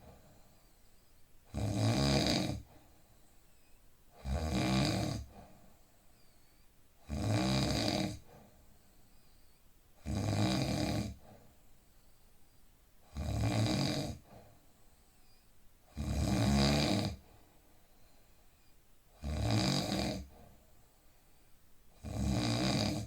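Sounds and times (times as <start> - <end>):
person snoring: 1.5 - 2.7, 4.2 - 5.4, 7.1 - 8.2, 10.0 - 11.2, 13.1 - 14.2, 15.9 - 17.2, 19.2 - 20.4, 22.0 - 23.0.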